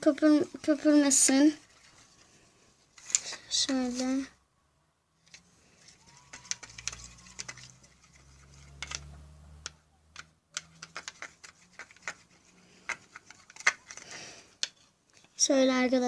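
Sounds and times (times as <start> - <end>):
utensil stirring in a container: 5.8 - 9.2, 10.6 - 14.3.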